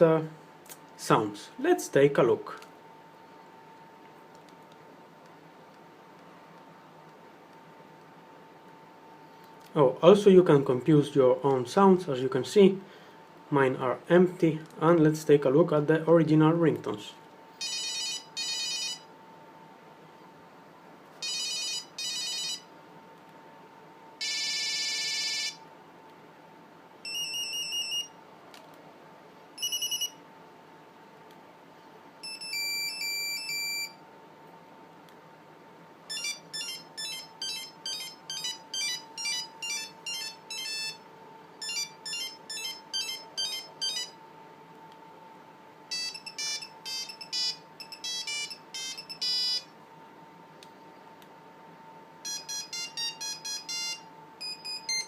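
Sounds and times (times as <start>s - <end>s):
phone beeps and chirps: 27.0s - 28.1s, 29.6s - 30.2s, 32.2s - 34.0s, 36.1s - 41.0s, 41.6s - 44.2s, 45.9s - 49.7s, 52.2s - 55.0s
monophonic ringtone melodies: 36.1s - 41.0s, 41.6s - 44.1s, 45.9s - 49.6s, 52.2s - 55.0s.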